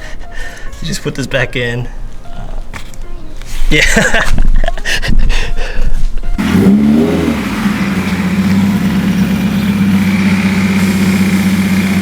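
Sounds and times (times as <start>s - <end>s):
car engine starting and idling: 6.4s - 12.0s.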